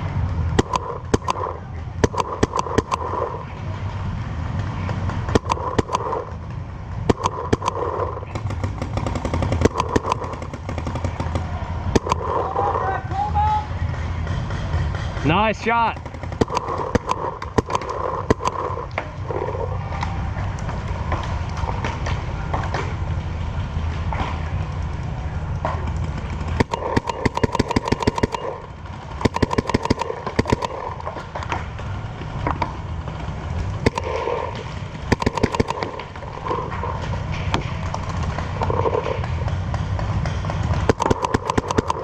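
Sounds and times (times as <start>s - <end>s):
steady low rumble: 0.0s - 42.0s
paintball markers firing: 0.5s - 3.5s, 4.9s - 12.7s, 15.4s - 19.8s, 25.5s - 32.8s, 33.6s - 42.0s.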